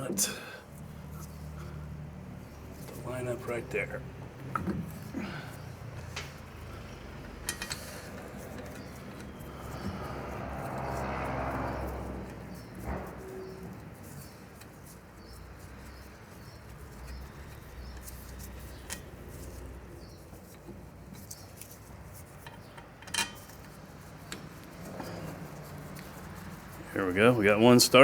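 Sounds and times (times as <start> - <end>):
driveshaft creaking and grinding: 6.1 - 14.8.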